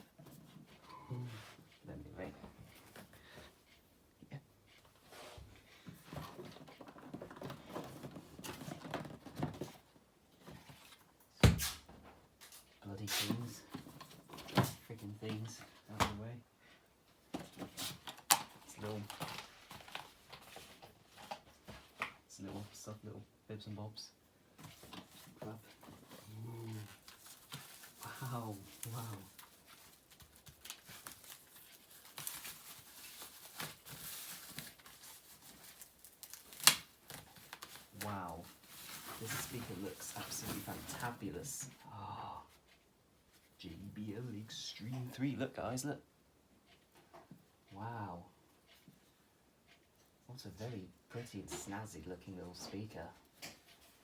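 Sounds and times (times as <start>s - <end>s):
packaging rustling: 17.4s - 22.0s, 24.6s - 41.8s.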